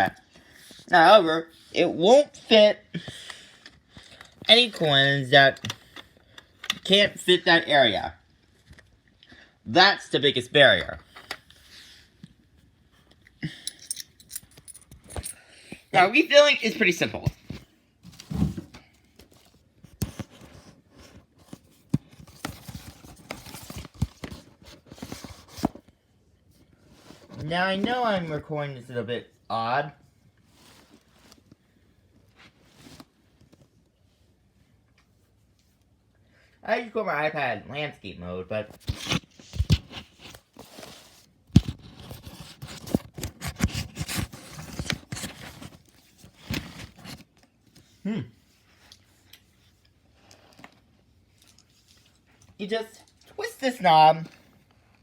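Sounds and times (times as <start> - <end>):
plastic clicks and scrapes: 41.5 - 47.8.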